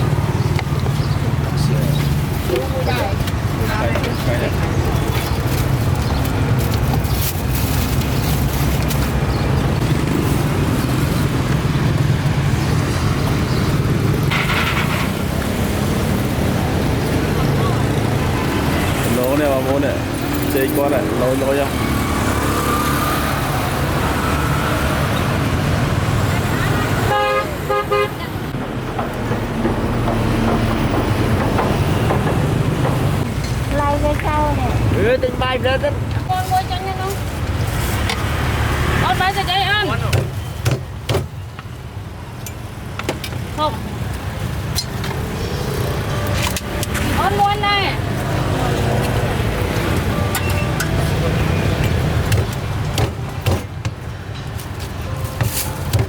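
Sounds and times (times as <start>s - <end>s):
road traffic rumble: 0.0s - 56.0s.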